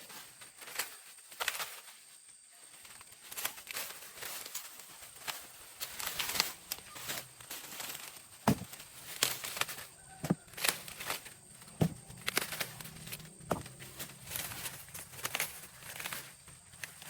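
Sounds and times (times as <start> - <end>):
dry corn leaves rustling: 0.0 - 17.0
corn ears snapping: 3.0 - 17.0.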